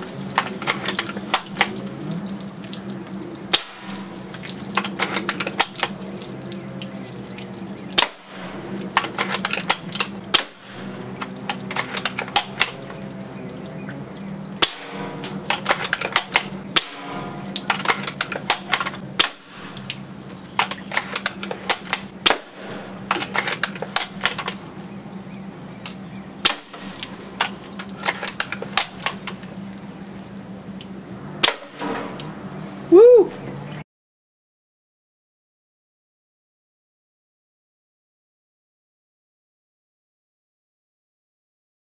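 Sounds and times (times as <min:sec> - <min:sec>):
steady low hum: 0:00.0 - 0:32.9.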